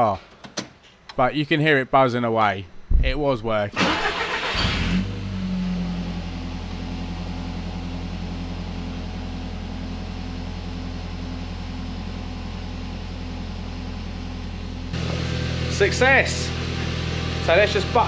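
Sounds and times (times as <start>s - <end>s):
car engine starting and idling: 2.7s - 9.6s.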